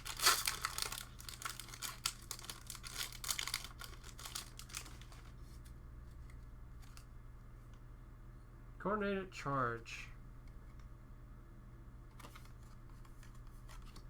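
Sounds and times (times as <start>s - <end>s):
foil wrapper tearing and crinkling: 0.0s - 5.4s.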